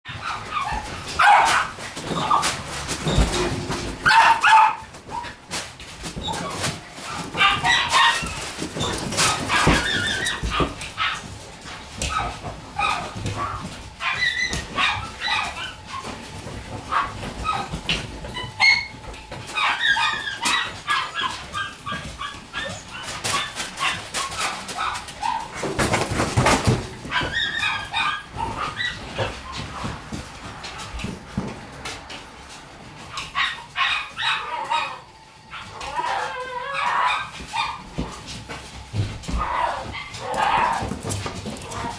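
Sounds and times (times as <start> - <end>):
puppy whimpering and yipping: 0.1 - 5.4, 6.2 - 11.2, 12.0 - 25.6, 27.1 - 29.9, 33.1 - 37.9
knocks and rustles: 0.1 - 33.6, 36.9 - 41.9.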